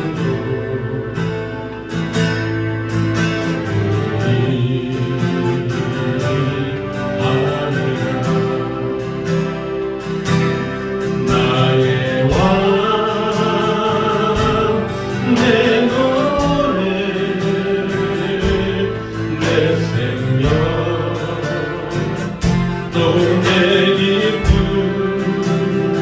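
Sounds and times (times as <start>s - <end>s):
people singing: 0.0s - 2.4s, 3.2s - 26.0s
praise band playing: 0.0s - 26.0s.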